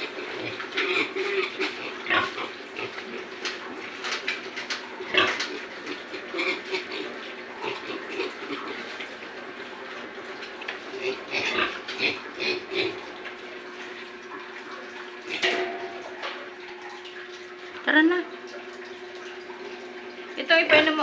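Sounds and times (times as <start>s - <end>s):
pigs grunting: 0.0s - 13.8s.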